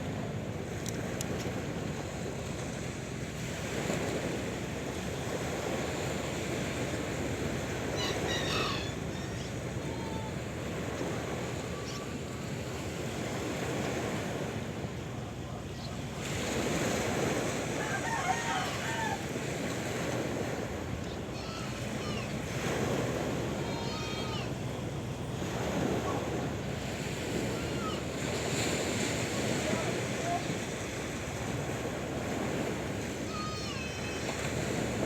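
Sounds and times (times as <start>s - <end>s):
sea waves washing on shore: 0.0s - 35.0s
wind: 0.0s - 35.0s.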